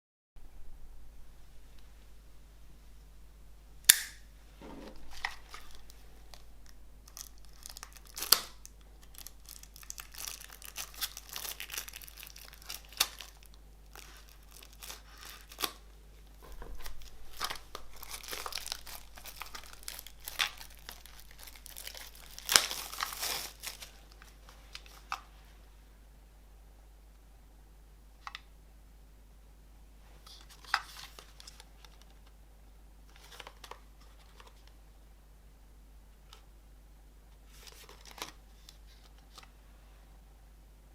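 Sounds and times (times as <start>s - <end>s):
sharp plastic snaps: 3.9s - 4.2s
plastic wrapping crinkling: 4.8s - 25.3s, 37.5s - 39.5s.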